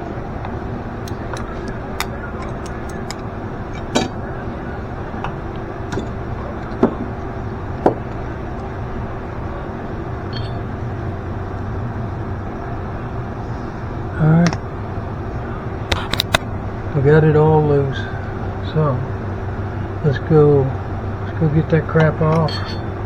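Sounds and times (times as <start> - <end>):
steady hum: 0.0 - 23.0
hand tools clicking on metal: 1.0 - 4.1.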